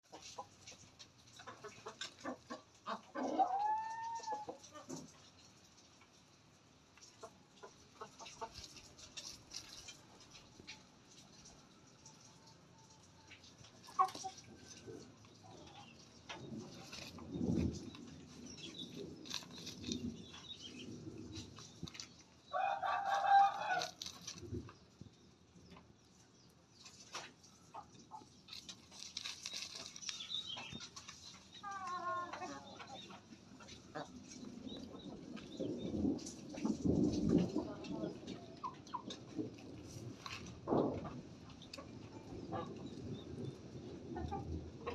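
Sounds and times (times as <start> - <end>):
chickens clucking: 0.0 - 44.9
rooster crowing: 22.5 - 24.0.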